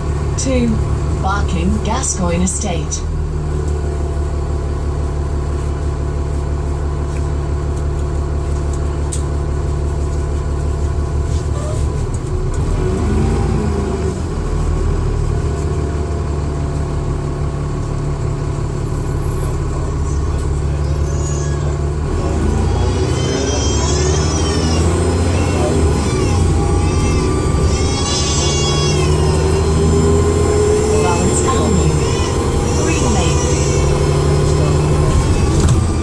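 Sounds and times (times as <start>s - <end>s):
bus diesel engine drone: 0.0s - 36.0s
turbocharger whine: 12.1s - 36.0s.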